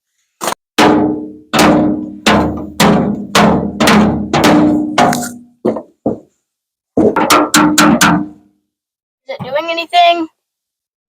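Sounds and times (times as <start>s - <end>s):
hammer blows on steel panel: 0.8s - 5.8s.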